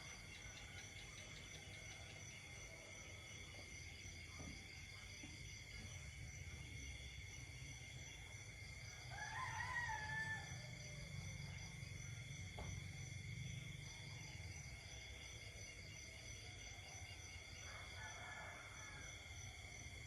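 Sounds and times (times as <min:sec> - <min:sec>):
faint rooster crowing: 0:08.8 - 0:11.6, 0:16.9 - 0:19.5.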